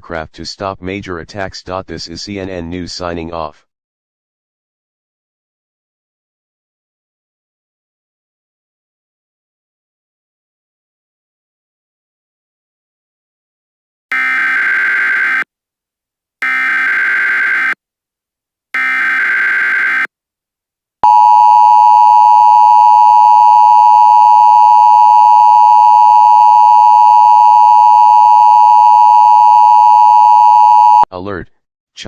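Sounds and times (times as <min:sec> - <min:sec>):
two-tone attention signal: 0:21.0 - 0:31.0.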